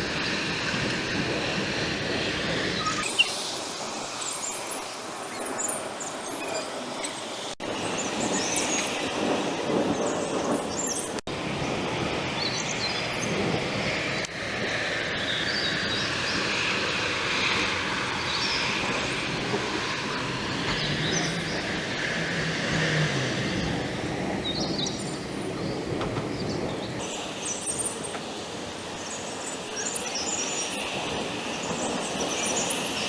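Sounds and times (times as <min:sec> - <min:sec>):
birds chirping: 0:03.0 - 0:11.2, 0:27.0 - 0:33.0
steady rushing noise: 0:03.0 - 0:12.3, 0:27.0 - 0:33.0.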